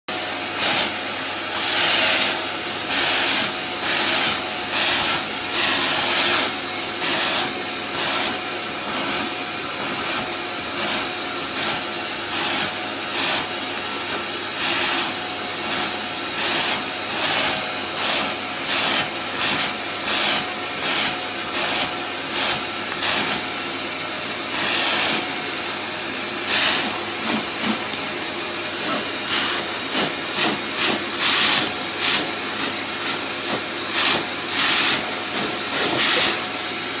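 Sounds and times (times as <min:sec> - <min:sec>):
vacuum cleaner running: 0:00.1 - 0:37.0.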